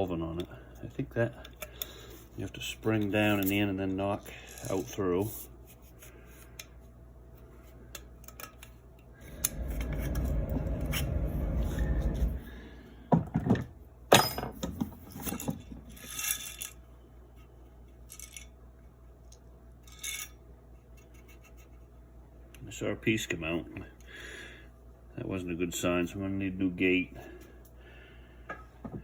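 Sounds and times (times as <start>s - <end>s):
metal scraping: 9.2s - 13.0s.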